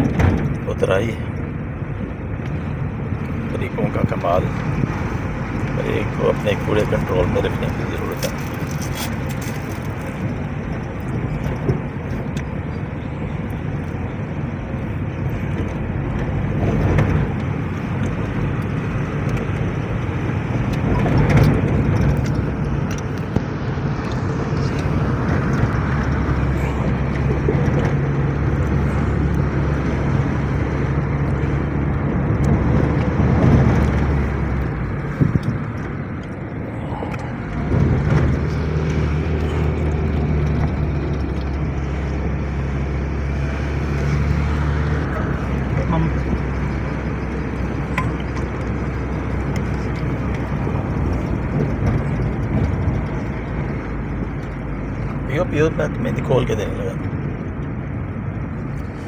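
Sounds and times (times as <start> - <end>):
car bumps: 0.0 - 1.0, 15.2 - 31.1, 32.2 - 42.4
car engine hum: 0.0 - 59.0
road noise: 0.0 - 59.0.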